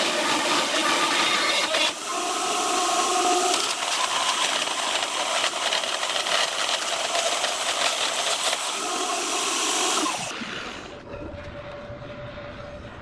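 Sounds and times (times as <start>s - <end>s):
power tool hissing: 0.0s - 10.4s.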